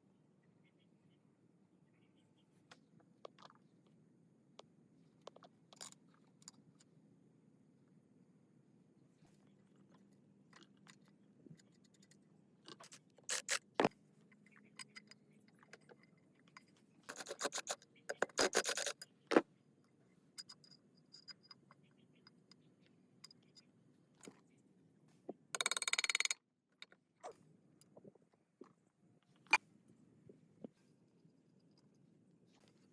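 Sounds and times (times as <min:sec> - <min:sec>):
fast rattling scrape: 0:17.1 - 0:19.0
rasping metal scrapes: 0:17.1 - 0:19.0.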